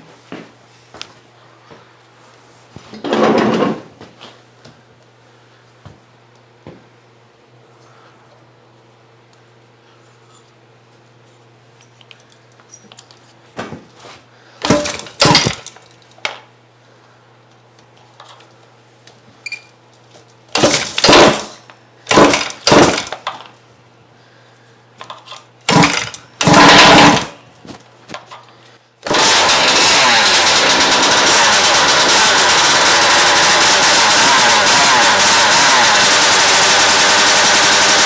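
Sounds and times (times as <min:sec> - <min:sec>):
recoil starter spinning engine: 0:14.6 - 0:15.8, 0:20.5 - 0:23.3, 0:25.6 - 0:27.4, 0:29.0 - 0:38.0.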